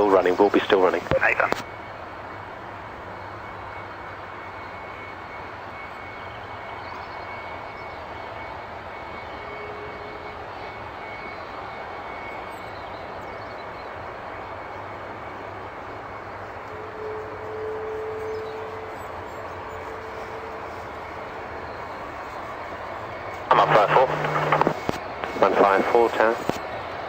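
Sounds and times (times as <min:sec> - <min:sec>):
faint high whine: 0:00.0 - 0:27.0
jet engine rushing: 0:17.9 - 0:27.0.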